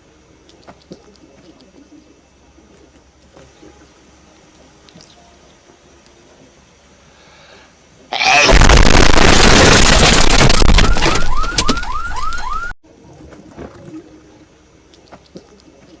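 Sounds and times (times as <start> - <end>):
loud distorted meme sound effect: 8.2 - 11.5.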